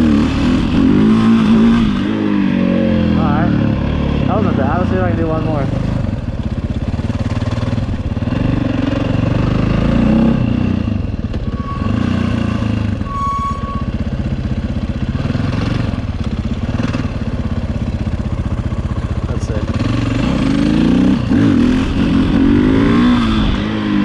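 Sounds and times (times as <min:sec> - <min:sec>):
motorcycle engine pulsing: 0:00.0 - 0:24.0
short high tone: 0:11.5 - 0:14.1.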